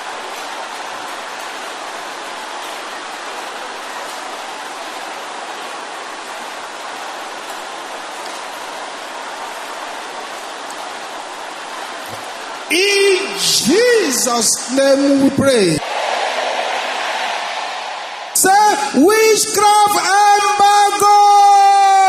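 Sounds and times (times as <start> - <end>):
congregation praying aloud: 11.1 - 22.0.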